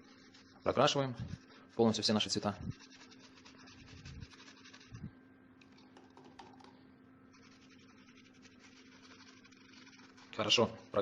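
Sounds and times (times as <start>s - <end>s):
paintbrush scratching on stone: 0.0s - 5.1s, 7.3s - 11.0s.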